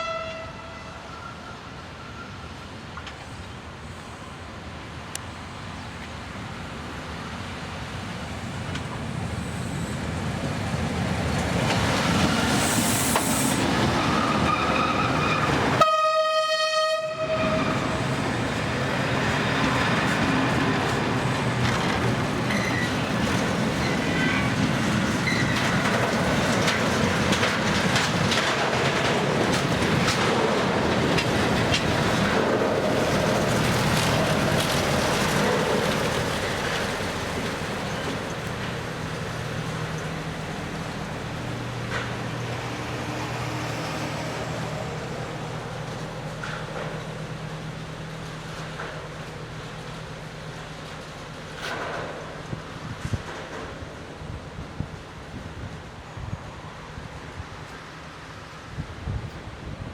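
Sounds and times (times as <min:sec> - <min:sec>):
train horn blast: 0:00.0 - 0:02.1, 0:14.2 - 0:18.0
freight train passing: 0:00.0 - 0:59.9
wheels clattering over rail joints: 0:17.4 - 0:43.0, 0:45.4 - 0:55.4.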